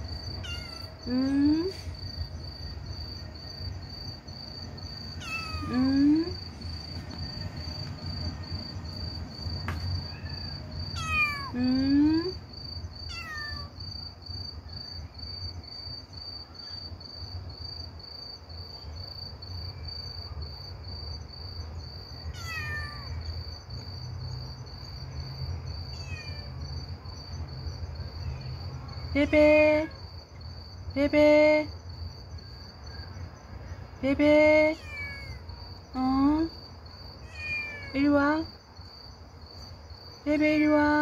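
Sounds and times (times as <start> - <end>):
crickets chirping: 0.0 - 41.0
kitten meowing: 0.4 - 1.0, 5.2 - 5.8, 11.0 - 11.5, 13.1 - 13.7, 22.3 - 23.2, 25.9 - 26.5, 34.8 - 35.4, 37.2 - 38.0.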